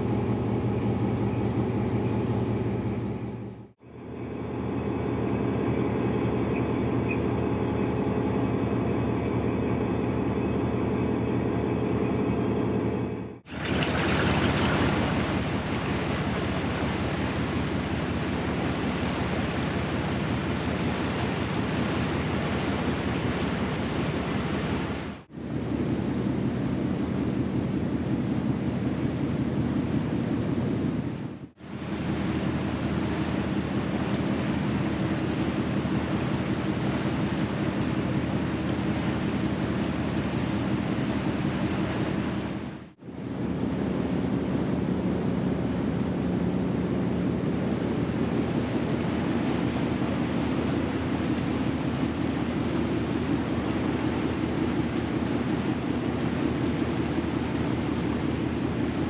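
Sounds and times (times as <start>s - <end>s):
wind and water rushing: 12.8s - 59.0s.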